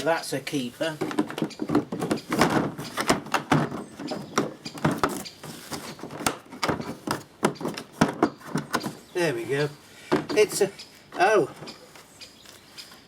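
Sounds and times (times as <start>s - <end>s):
objects knocking and clattering: 1.0s - 9.0s.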